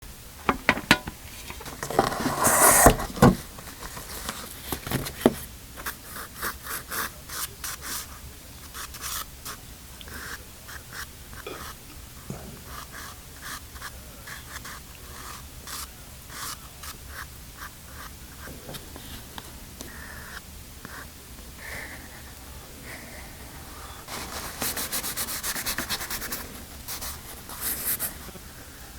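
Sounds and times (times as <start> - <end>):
pastel sticks scratching paper: 1.6 - 11.8, 12.6 - 18.5, 24.1 - 28.3.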